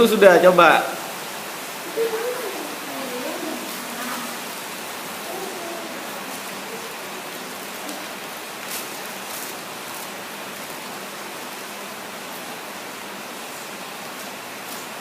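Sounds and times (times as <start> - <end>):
background hiss: 0.0 - 15.0
faint voices: 1.7 - 8.5.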